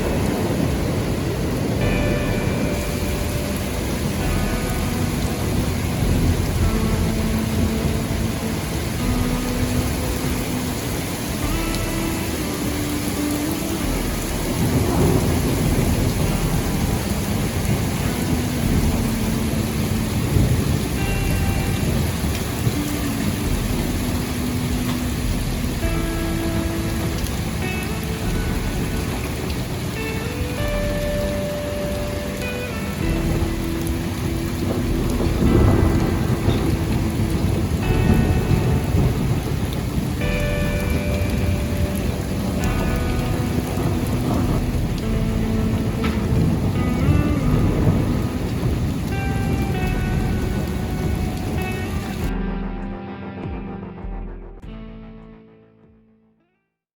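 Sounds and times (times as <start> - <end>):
low thunder rumbling: 0.0 - 52.8
heavy rain pouring: 0.0 - 53.2
low rumble: 32.9 - 55.8.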